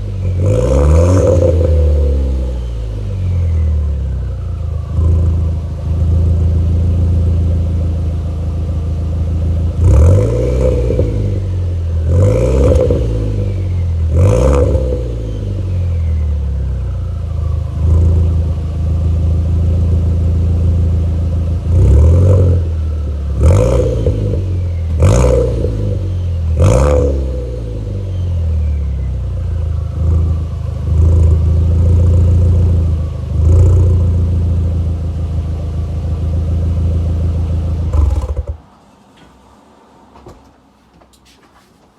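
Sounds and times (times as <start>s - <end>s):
car engine revving: 0.0s - 38.7s.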